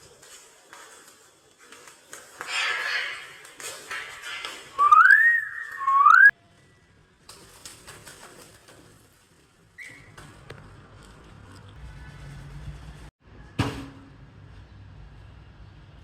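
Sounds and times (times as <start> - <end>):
sliding whistle: 4.8 - 6.3.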